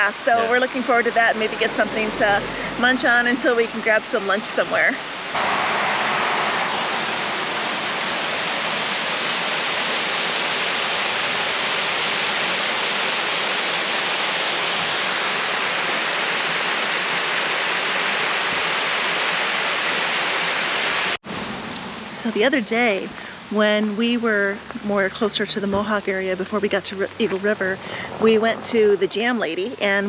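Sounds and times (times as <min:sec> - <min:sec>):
waterfall rushing: 0:00.0 - 0:21.2.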